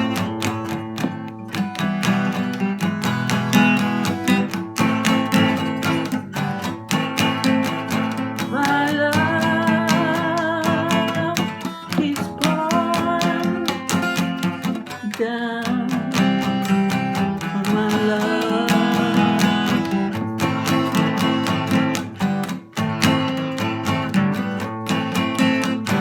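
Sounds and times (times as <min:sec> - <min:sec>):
acoustic guitar strumming: 0:00.0 - 0:26.0
person singing: 0:07.8 - 0:20.9.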